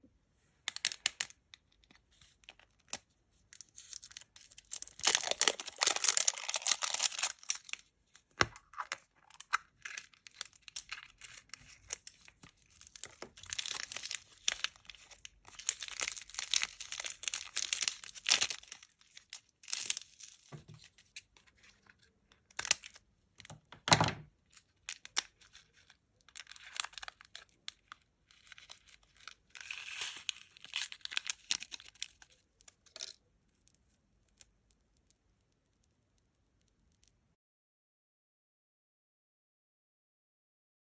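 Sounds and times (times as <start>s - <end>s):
foil wrapper crinkling: 3.6s - 7.9s, 8.5s - 22.0s, 24.9s - 33.1s.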